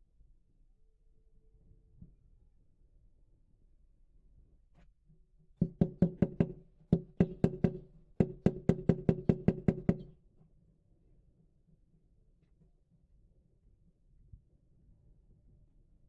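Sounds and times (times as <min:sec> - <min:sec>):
sharp knocks with low ringing: 0:05.6 - 0:10.1.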